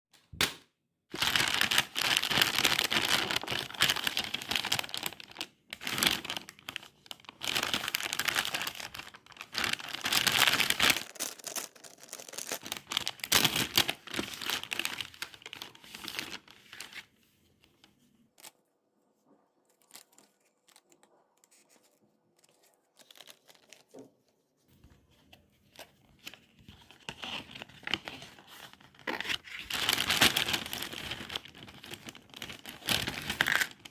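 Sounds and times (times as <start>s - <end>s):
packaging tearing and crinkling: 1.2s - 17.0s, 28.9s - 33.9s.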